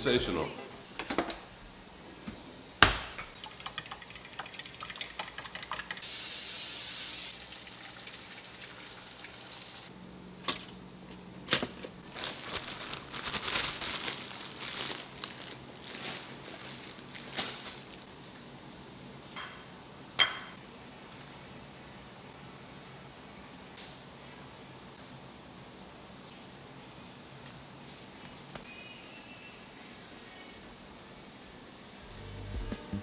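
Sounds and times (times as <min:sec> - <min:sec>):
dishes and utensils clinking: 0:02.8 - 0:06.2, 0:19.4 - 0:21.4.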